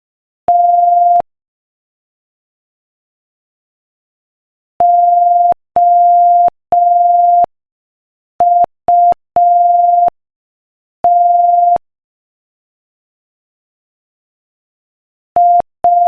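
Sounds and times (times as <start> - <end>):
morse code beeps: 0.5 - 1.2, 4.8 - 7.5, 8.4 - 10.1, 15.4 - 16.0.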